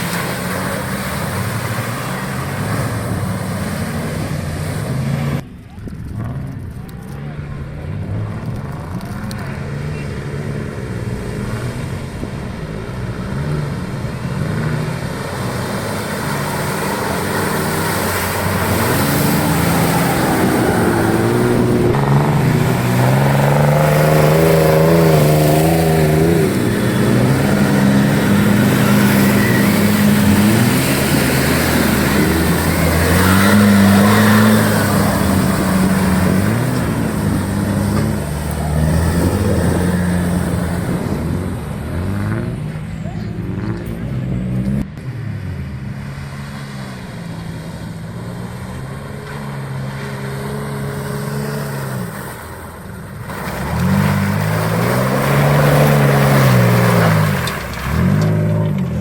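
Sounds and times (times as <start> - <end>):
engine revving hard: 12.8 - 42.8, 53.3 - 59.0.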